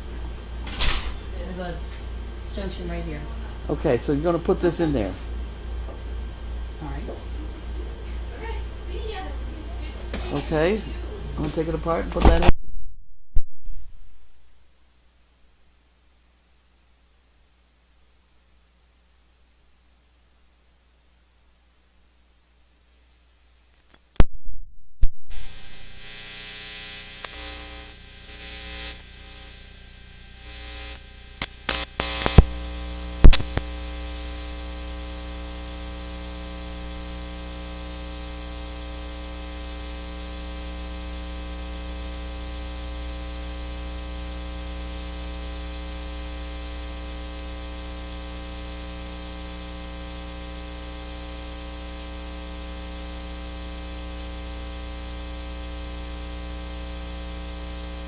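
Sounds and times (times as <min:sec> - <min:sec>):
mains hum buzz: 0:00.0 - 0:12.6, 0:13.7 - 0:24.3, 0:25.3 - 0:58.0
cable connector crackles and pops: 0:27.2 - 0:27.5, 0:31.4 - 0:32.6, 0:33.2 - 0:33.8.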